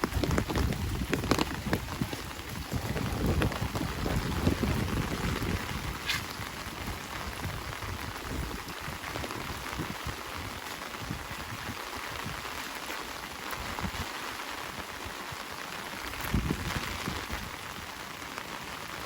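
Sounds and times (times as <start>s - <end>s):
heavy rain falling: 0.0s - 19.0s.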